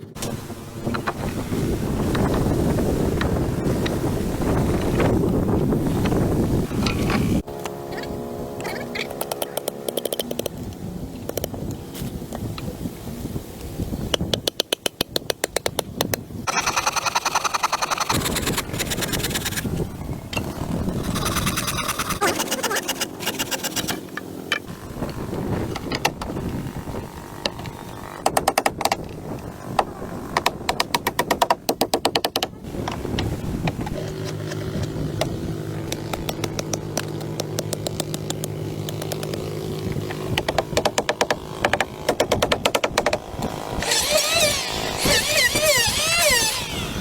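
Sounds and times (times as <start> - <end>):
small engine running unevenly: 16.5 - 30.6, 32.6 - 47.0.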